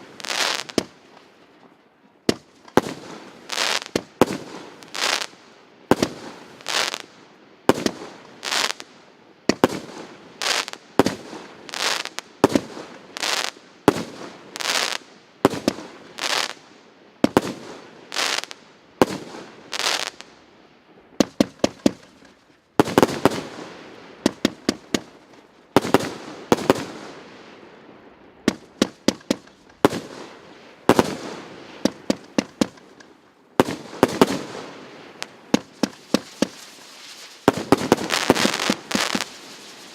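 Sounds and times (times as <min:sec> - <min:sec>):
firework cracks: 0:00.0 - 0:01.3, 0:02.3 - 0:07.1, 0:07.7 - 0:08.9, 0:09.5 - 0:16.6, 0:17.2 - 0:20.3, 0:21.2 - 0:27.2, 0:28.4 - 0:39.9
firework shots banging: 0:21.2 - 0:23.5, 0:28.4 - 0:30.3, 0:30.9 - 0:39.9.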